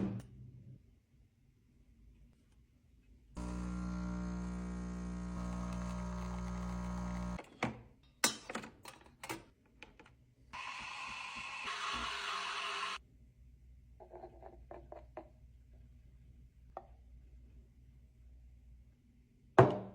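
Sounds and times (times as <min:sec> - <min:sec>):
espresso machine pump buzzing: 0:03.4 - 0:07.4, 0:10.6 - 0:13.0.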